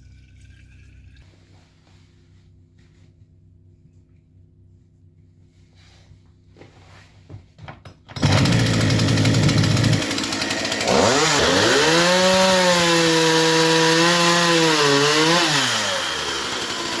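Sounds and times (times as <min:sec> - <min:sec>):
chainsaw running and revving: 0:08.2 - 0:17.0.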